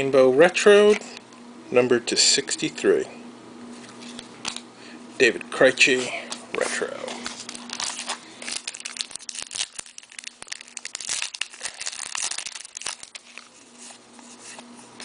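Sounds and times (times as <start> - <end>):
wrapper crinkling and tearing: 7.1 - 13.6.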